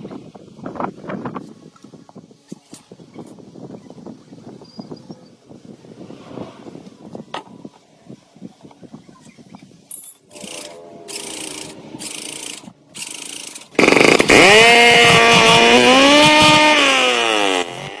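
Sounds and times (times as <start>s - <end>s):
old engine starting and running: 10.4s - 18.0s.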